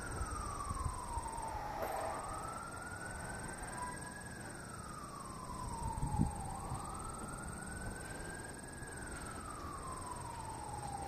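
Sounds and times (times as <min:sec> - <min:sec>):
siren wailing: 0:00.0 - 0:11.0.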